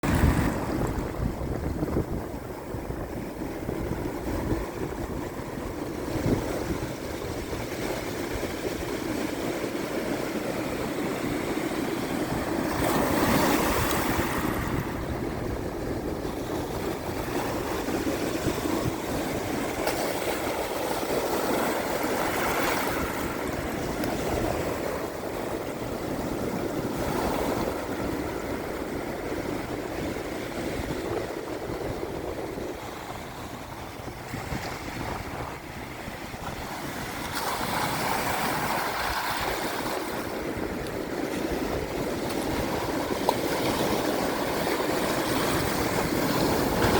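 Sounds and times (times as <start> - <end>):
surf washing over shells: 0.0 - 30.4.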